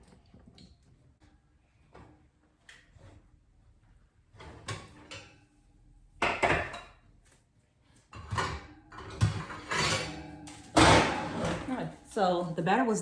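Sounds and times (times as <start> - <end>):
kitchen knocks and clatters: 4.3 - 5.5, 6.2 - 7.2, 8.1 - 12.1.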